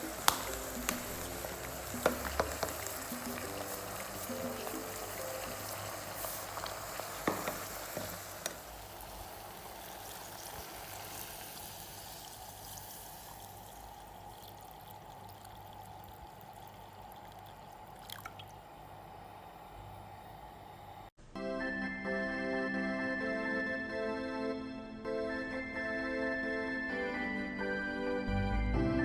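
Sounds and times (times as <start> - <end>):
liquid pouring in a pot: 0.0 - 19.2.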